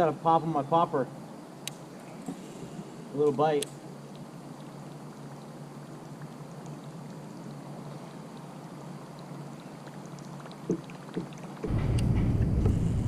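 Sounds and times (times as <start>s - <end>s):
creek water running: 0.0s - 11.7s
small ticks and splashes: 0.3s - 11.7s
loud low rumble: 11.7s - 13.0s.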